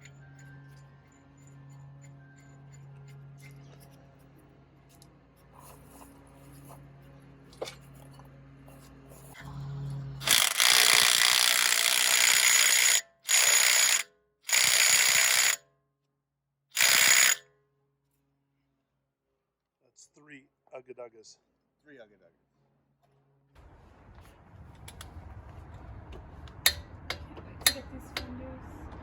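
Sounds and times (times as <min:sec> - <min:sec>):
impact wrench running: 0:10.2 - 0:15.6, 0:16.8 - 0:17.4, 0:26.6 - 0:28.3
faint background music: 0:27.2 - 0:29.0.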